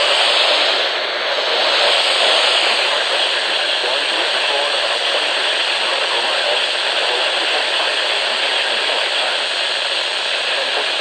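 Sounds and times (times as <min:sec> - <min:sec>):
radio static hiss: 0:00.0 - 0:11.0.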